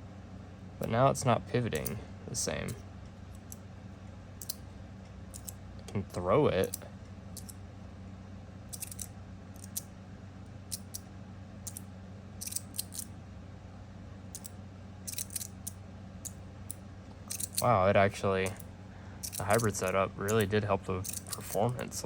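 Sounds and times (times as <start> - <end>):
metal slider plates clicking: 5.3 - 5.6, 8.7 - 9.8, 12.4 - 13.1, 17.3 - 17.6, 21.0 - 21.7.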